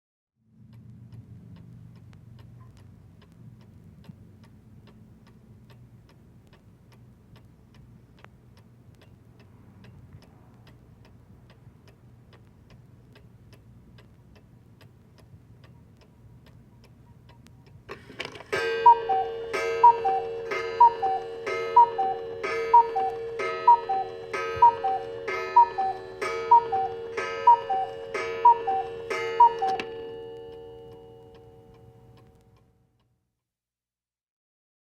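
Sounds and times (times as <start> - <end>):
clock ticking: 0.6 - 33.1
clock mechanism clunk: 17.9 - 31.6
cuckoo clock calls: 17.9 - 31.9
steady ringing tone: 18.5 - 32.1.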